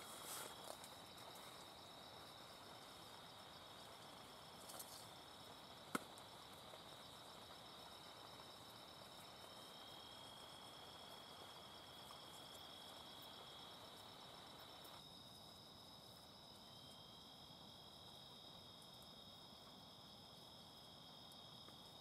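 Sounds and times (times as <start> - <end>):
soft rustles: 0.0 - 1.6
crickets chirping: 0.0 - 22.0.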